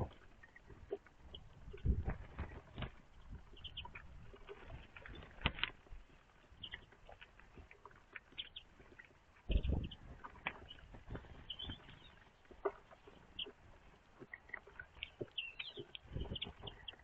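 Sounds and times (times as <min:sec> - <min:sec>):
birds pecking and scrabbling: 0:00.0 - 0:17.0.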